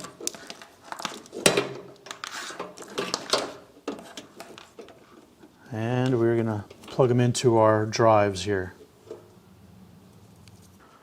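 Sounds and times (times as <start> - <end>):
cables rustling: 0.0 - 7.4.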